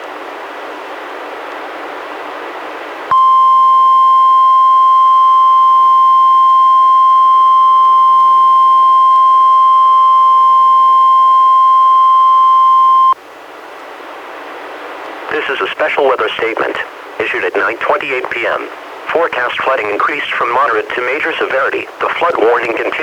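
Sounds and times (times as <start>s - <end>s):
loud steady alarm tone: 3.1s - 13.2s
radio hiss: 15.2s - 23.0s.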